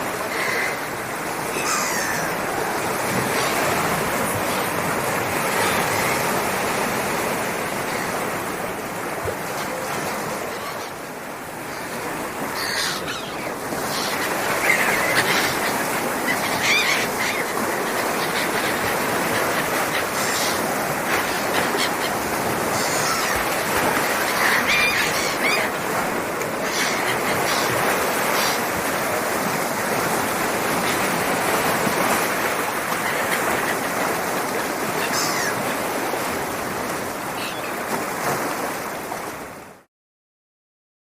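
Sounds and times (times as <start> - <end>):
sea waves washing in: 0.0 - 39.9.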